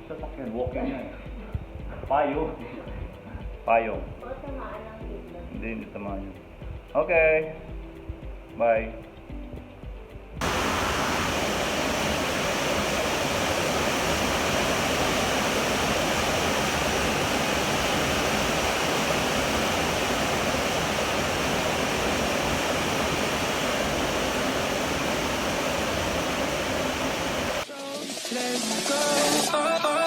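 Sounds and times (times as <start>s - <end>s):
heavy rain pouring: 10.4s - 29.6s.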